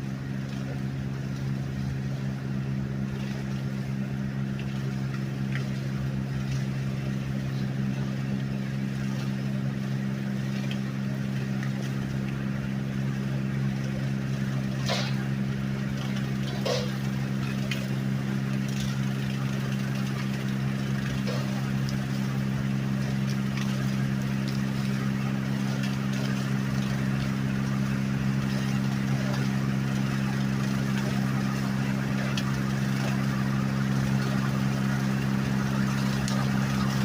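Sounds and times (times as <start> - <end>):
tractor engine running: 14.6 - 26.3.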